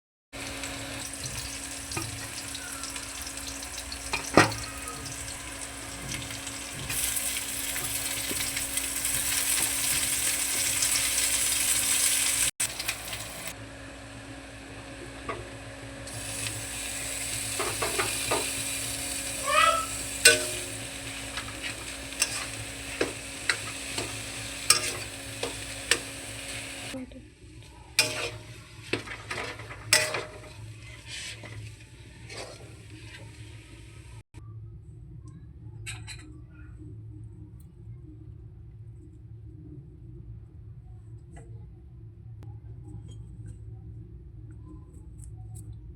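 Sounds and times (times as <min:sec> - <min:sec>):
oil sizzling in a pan: 0:00.4 - 0:13.6, 0:14.5 - 0:27.0, 0:27.9 - 0:34.2.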